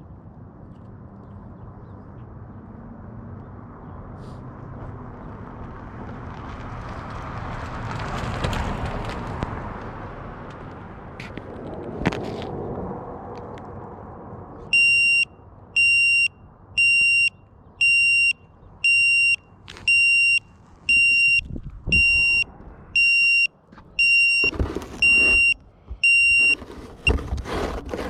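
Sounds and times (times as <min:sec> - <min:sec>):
electronic beeper beeping: 0:14.8 - 0:26.6
rustling: 0:23.7 - 0:28.0.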